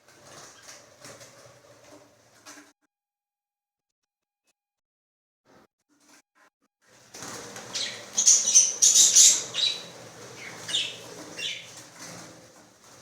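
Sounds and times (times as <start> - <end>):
birds flapping wings: 0.0 - 2.0, 7.0 - 13.0
high bird chirps: 7.7 - 11.7.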